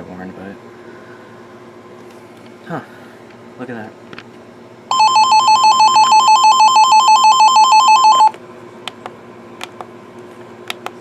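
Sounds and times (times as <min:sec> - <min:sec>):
warbling electronic alarm: 0:04.9 - 0:08.4.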